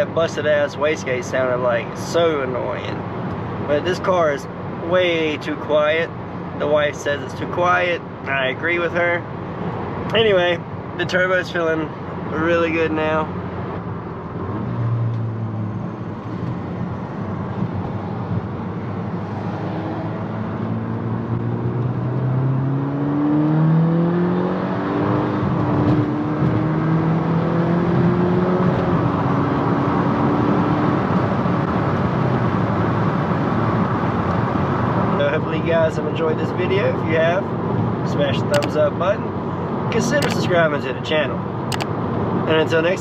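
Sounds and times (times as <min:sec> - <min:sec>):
road noise: 0:00.0 - 0:43.0
car engine accelerating: 0:13.6 - 0:32.6.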